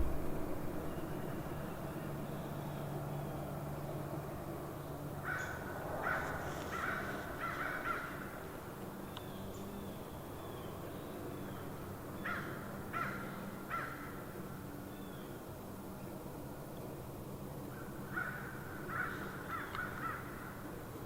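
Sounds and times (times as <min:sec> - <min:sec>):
crow cawing: 0:05.2 - 0:08.4, 0:12.2 - 0:14.2, 0:18.1 - 0:20.6.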